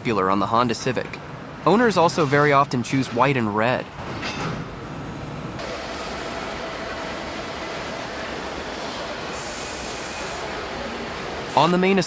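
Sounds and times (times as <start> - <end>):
factory hiss: 5.6 - 12.0.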